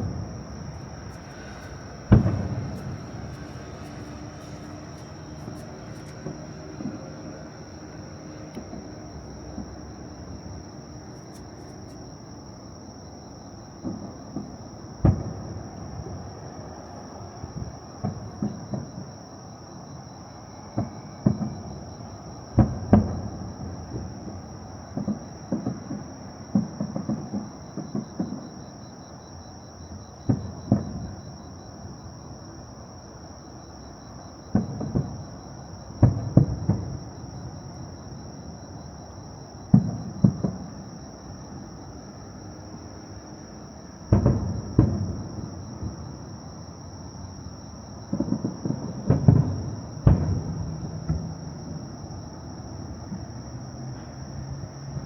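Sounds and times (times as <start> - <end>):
distant fireworks booming: 0.0 - 13.0, 13.6 - 32.3, 33.8 - 55.0.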